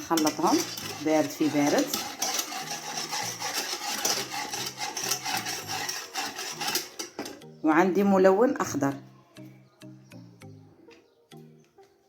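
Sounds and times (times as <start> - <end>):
utensil stirring and scraping container: 0.0 - 7.6.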